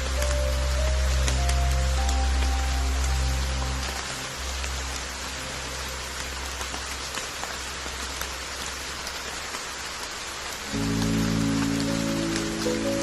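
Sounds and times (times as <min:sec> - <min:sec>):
raindrop ticks: 0:00.0 - 0:13.0
soft low music tones: 0:00.0 - 0:13.0
steady rain falling: 0:00.0 - 0:13.0.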